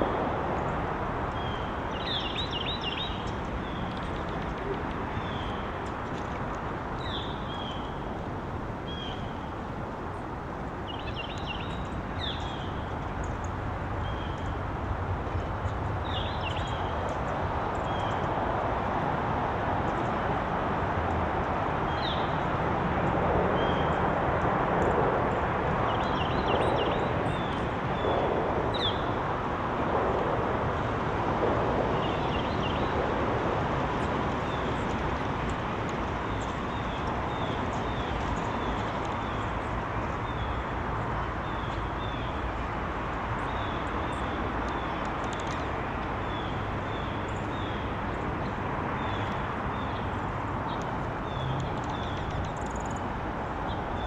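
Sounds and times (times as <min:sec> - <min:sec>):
small birds chirping: 0:01.4 - 0:05.7, 0:10.8 - 0:14.6.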